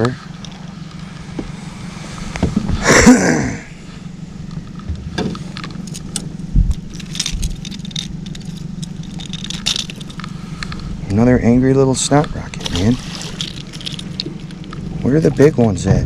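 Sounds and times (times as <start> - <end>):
steady low hum: 0.0 - 16.0
fishing lure hooks jangling: 5.7 - 10.4, 13.1 - 14.6.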